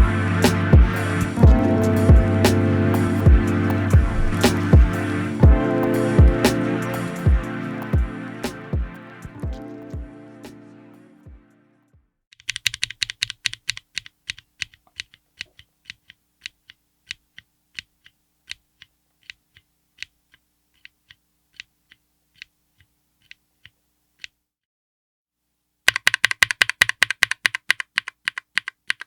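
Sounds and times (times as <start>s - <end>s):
mechanical keyboard typing: 12.4s - 21.7s, 25.9s - 29.0s.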